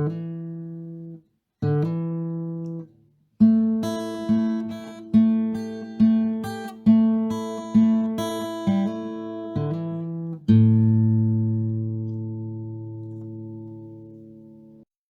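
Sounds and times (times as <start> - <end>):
acoustic guitar strumming chords: 3.4 - 14.8.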